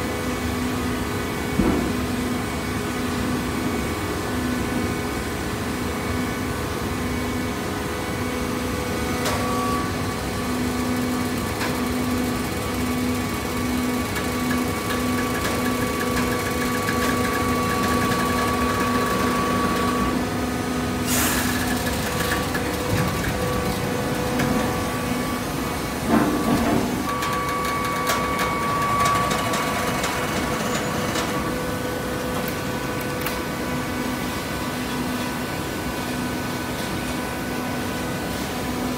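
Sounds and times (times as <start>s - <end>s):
pump motor running: 10.2s - 32.5s.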